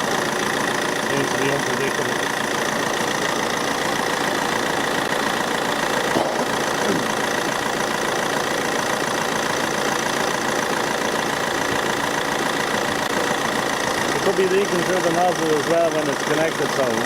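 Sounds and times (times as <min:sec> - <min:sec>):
air conditioning running: 0:00.0 - 0:17.0
car engine idling: 0:00.0 - 0:17.0.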